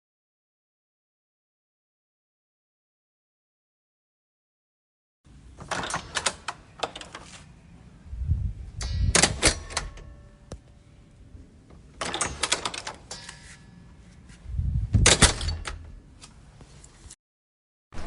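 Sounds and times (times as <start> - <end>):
door handle and latch clicking: 5.6 - 7.2, 8.8 - 10.2, 12.0 - 13.2, 15.0 - 16.0.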